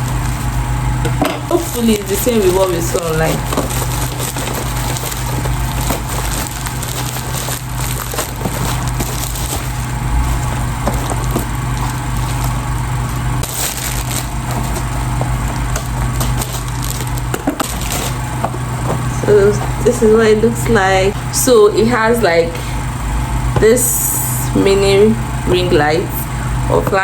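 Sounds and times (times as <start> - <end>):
packaging crackling and rustling: 1.5 - 19.9.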